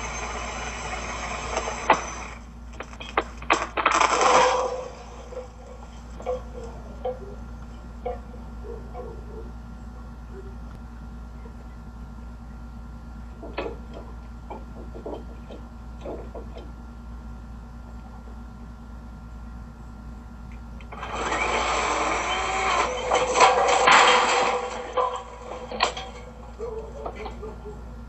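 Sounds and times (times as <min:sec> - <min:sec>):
chainsaw running rough: 0:20.9 - 0:25.7.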